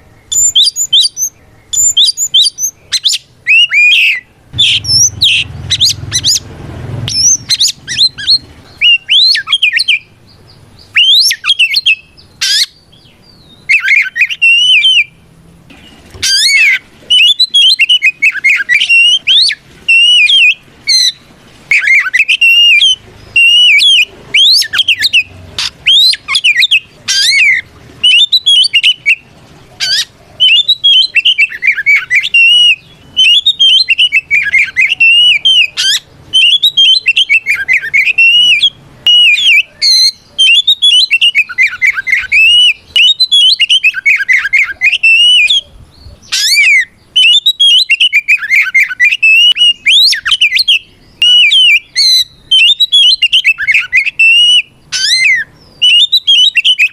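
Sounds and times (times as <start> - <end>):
bird song whistles and warbles: 0.0 - 56.9.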